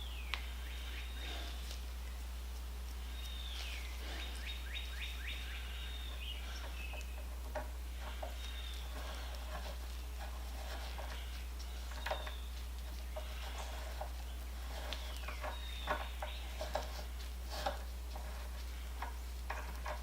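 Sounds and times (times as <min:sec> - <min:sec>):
faint bird chirps: 0:00.0 - 0:02.3, 0:03.0 - 0:07.4, 0:08.0 - 0:17.0
steady low hum: 0:00.0 - 0:20.0.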